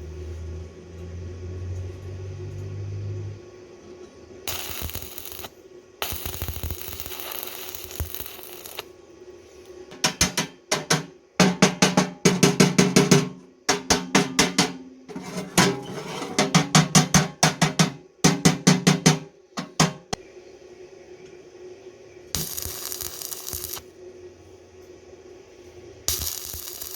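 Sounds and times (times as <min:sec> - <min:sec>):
rapid hammer blows on metal: 0:10.0 - 0:14.9, 0:16.4 - 0:20.1
hissing noise: 0:22.4 - 0:23.9.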